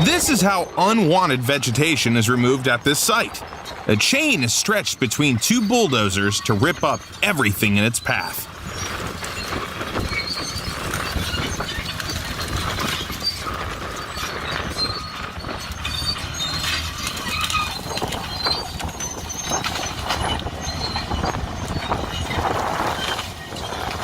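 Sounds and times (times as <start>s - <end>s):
bulldozer engine hum: 0.0s - 24.0s
high squeaks: 0.0s - 24.0s
chain clanking through brush: 8.4s - 24.0s.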